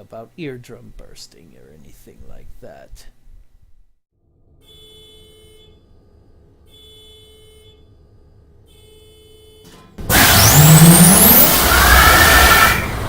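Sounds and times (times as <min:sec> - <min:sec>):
faint locomotive horn blasts: 0:04.6 - 0:06.0, 0:06.6 - 0:08.0, 0:08.6 - 0:09.9.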